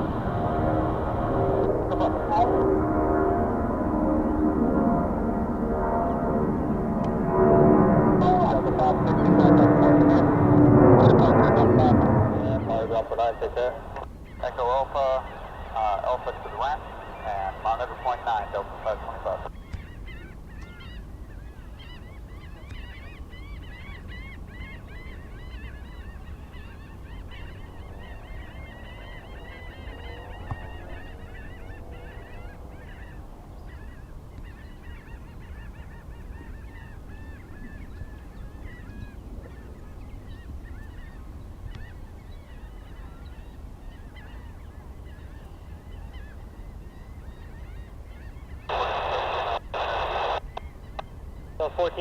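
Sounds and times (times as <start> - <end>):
steady low rumble: 0.0 - 19.5
flock of birds calling: 11.2 - 52.0.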